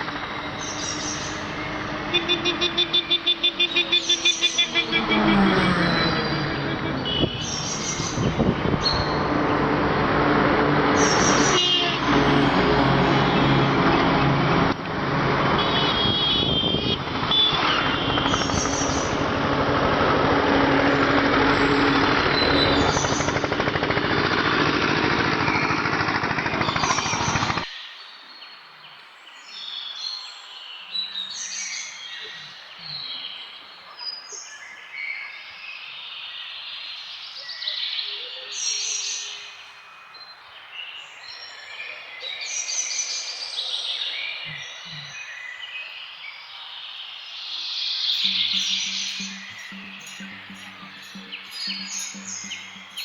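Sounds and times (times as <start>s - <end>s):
small birds chirping: 0.0s - 9.8s, 15.6s - 19.5s, 20.8s - 24.1s, 47.5s - 53.0s
loud rushing noise: 0.0s - 27.2s.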